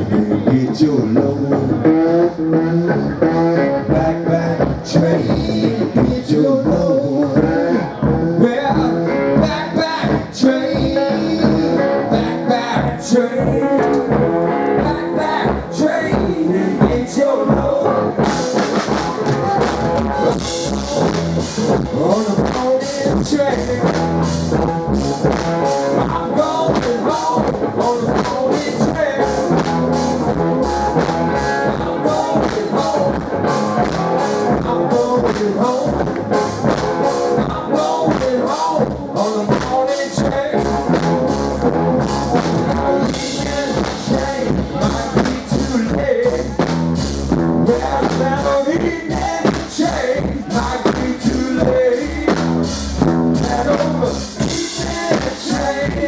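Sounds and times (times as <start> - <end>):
live blues-rock band: 0.0 - 56.0
drum-kit beat: 3.9 - 56.0
electric slide guitar: 17.6 - 39.4, 40.4 - 45.8.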